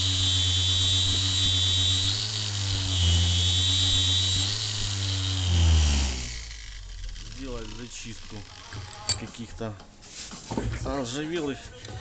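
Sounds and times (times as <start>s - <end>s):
angle grinder whining: 0.0s - 9.5s.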